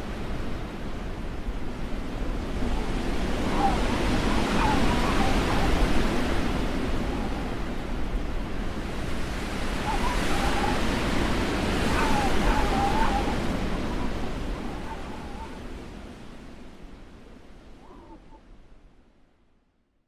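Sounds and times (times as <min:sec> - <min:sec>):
blizzard wind rushing: 0:01.0 - 0:17.6
wavering whistle-like howl: 0:02.5 - 0:08.0, 0:09.5 - 0:16.0.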